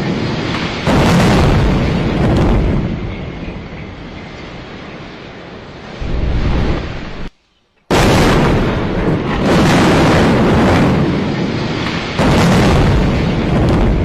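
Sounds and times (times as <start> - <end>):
collapsing tower rumbling roar: 6.0 - 7.3, 7.9 - 14.0.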